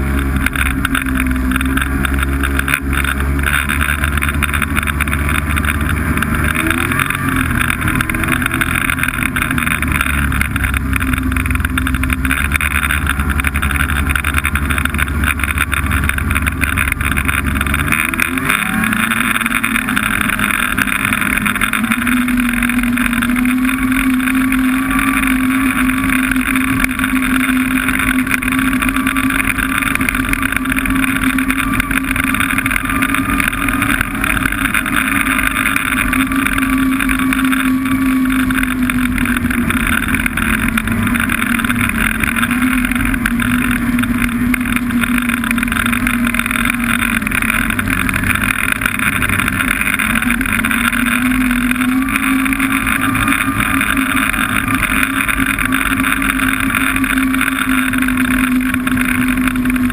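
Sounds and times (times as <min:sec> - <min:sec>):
snowmobile engine running: 0:00.0 - 0:59.9.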